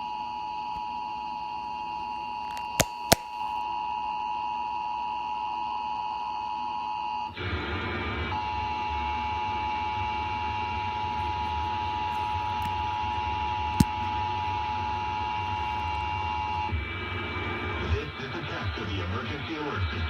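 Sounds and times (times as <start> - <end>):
sharp clicks: 2.5 - 3.4.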